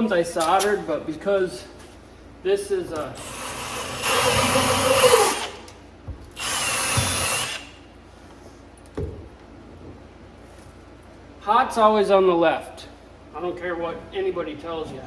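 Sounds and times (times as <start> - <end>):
power drill running: 3.2 - 5.6, 6.3 - 7.8.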